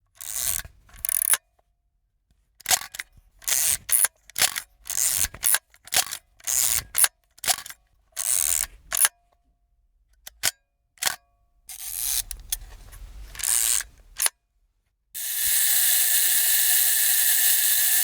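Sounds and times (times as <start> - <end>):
camera mechanism whirring: 15.2 - 18.0.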